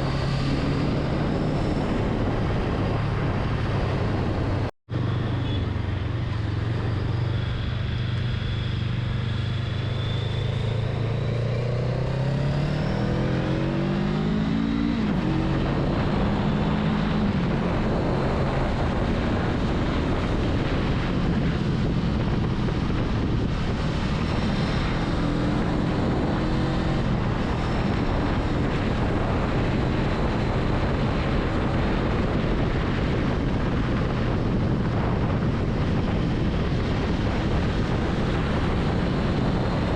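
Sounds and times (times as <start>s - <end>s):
wind and road noise: 0.0s - 39.9s
motorcycle engine revving: 6.8s - 39.9s.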